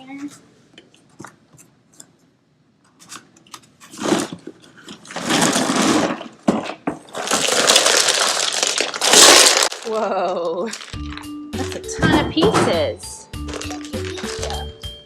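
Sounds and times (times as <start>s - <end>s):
toy pieces clattering: 7.1s - 11.9s, 13.5s - 14.7s.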